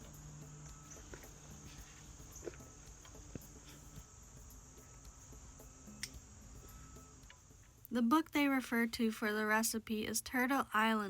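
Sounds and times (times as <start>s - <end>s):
crickets trilling: 0.0s - 7.9s.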